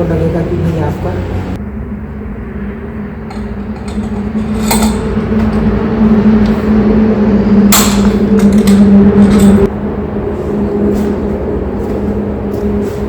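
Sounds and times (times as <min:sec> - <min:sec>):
machine hum: 0:00.0 - 0:13.0
sharp metallic clinks: 0:03.3 - 0:05.8.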